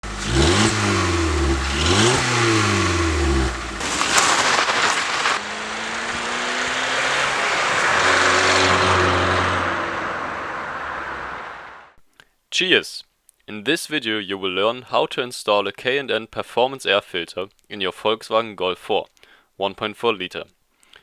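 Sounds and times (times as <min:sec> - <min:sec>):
car engine revving: 0:00.0 - 0:12.0
loud rushing noise: 0:03.5 - 0:11.9.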